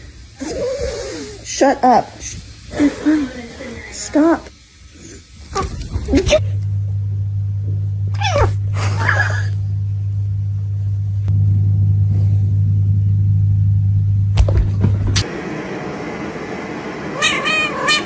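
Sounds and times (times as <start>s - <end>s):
steady low hum: 0.0s - 18.0s
cat meowing: 17.2s - 18.0s.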